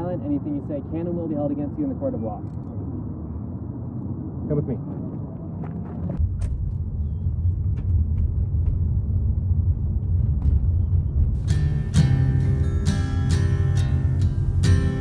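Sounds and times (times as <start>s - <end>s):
low steady rumble: 0.0s - 15.0s
acoustic guitar music: 11.4s - 15.0s.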